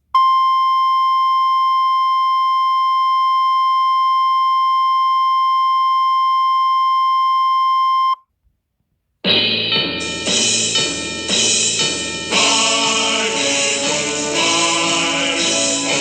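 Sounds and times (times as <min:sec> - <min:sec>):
steady beep tone: 0:00.2 - 0:08.2
music: 0:09.2 - 0:16.0.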